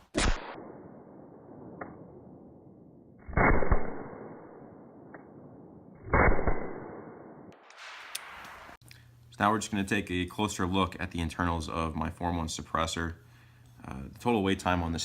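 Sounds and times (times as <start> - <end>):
sharp crack: 0.0 - 8.8
suppressed gunshots: 0.0 - 8.8.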